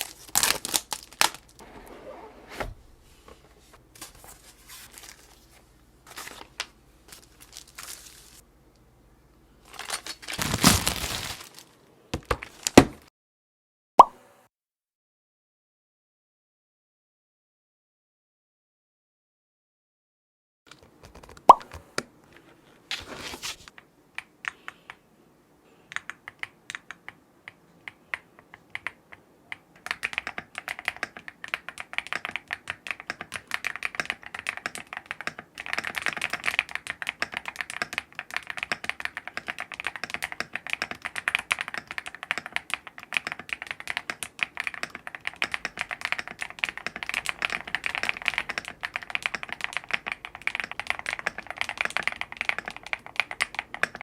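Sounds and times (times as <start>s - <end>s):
mechanical keyboard typing: 25.9s - 54.0s.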